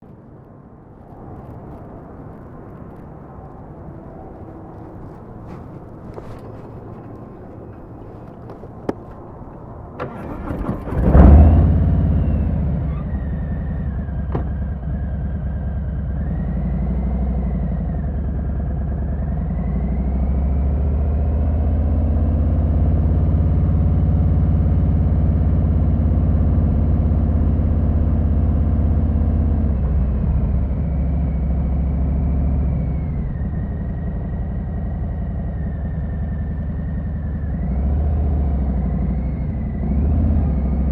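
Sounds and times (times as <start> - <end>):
electric starter cranking: 10.0 - 11.4
motorcycle engine idling: 12.1 - 16.7, 25.2 - 37.7.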